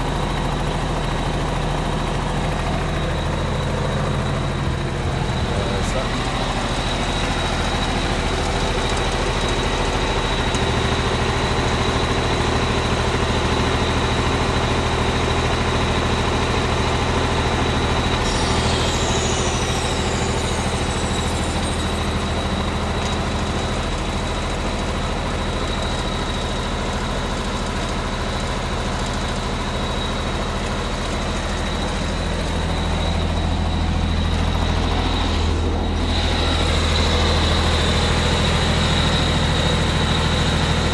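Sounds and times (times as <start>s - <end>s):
thin high whine: 0.0s - 9.0s, 17.6s - 24.2s, 31.2s - 40.9s
diesel engine running: 0.0s - 40.9s.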